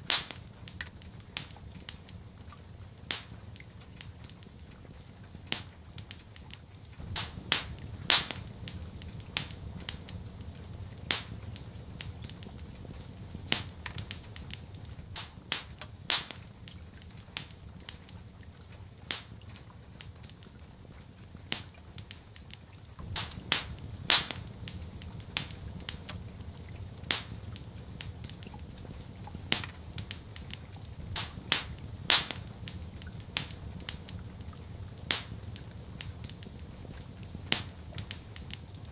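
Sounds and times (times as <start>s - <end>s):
low steady rumble: 0.0s - 38.9s
wood fire crackling: 0.0s - 38.9s.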